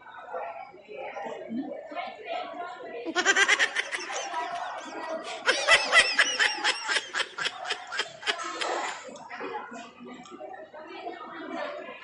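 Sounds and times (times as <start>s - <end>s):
person snickering laughter: 3.1s - 9.0s.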